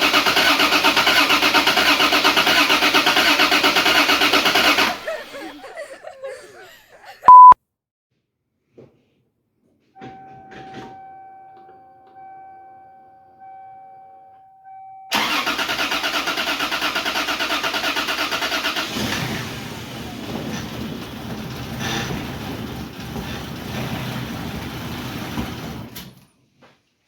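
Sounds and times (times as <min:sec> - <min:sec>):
engine starter cranking: 0:00.0 - 0:05.9, 0:15.1 - 0:26.2
engine running unevenly: 0:18.6 - 0:26.1.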